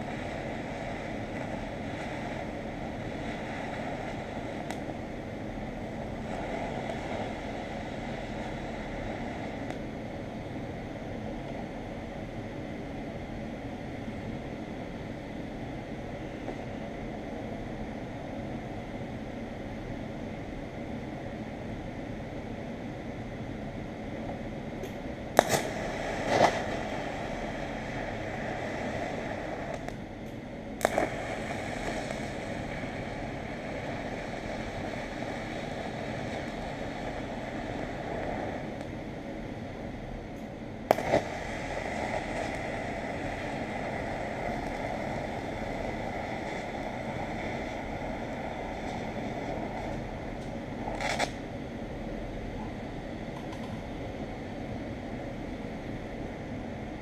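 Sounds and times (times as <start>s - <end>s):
welder sharp click: 24.8s - 26.6s
welding arc hissing: 25.4s - 30.0s, 30.8s - 39.2s, 40.9s - 51.5s.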